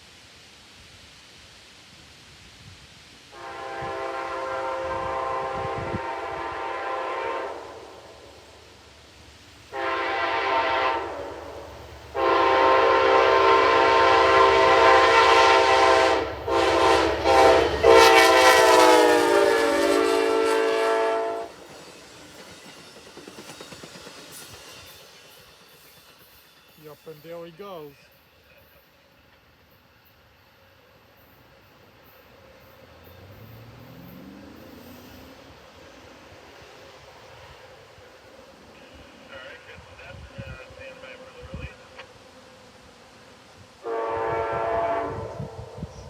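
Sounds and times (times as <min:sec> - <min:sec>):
train low rumble: 0:00.0 - 0:46.0
locomotive air horn blasts: 0:03.3 - 0:08.0, 0:09.7 - 0:21.6, 0:43.8 - 0:46.0.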